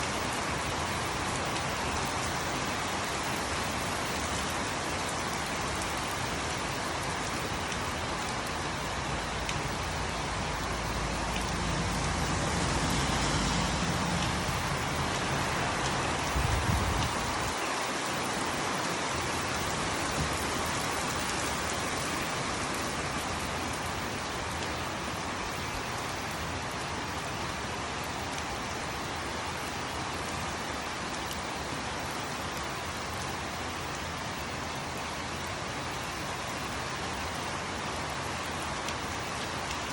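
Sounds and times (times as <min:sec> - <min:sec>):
rain pattering on surfaces: 0:00.0 - 0:39.9.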